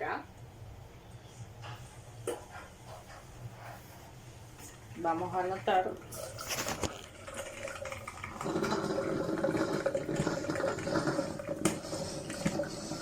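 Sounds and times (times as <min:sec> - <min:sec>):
coffee maker gurgling water: 0:04.9 - 0:13.0.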